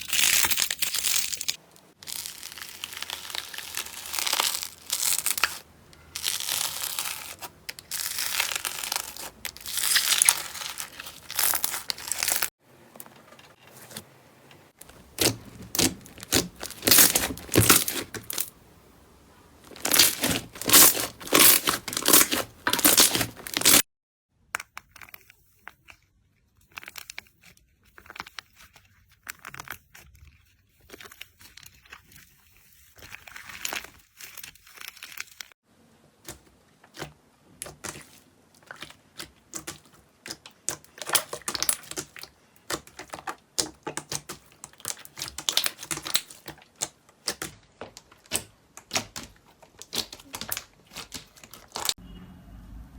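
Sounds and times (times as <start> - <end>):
slime crackling and popping: 0.0 - 12.5, 14.8 - 18.5, 19.7 - 23.8, 36.2 - 52.0.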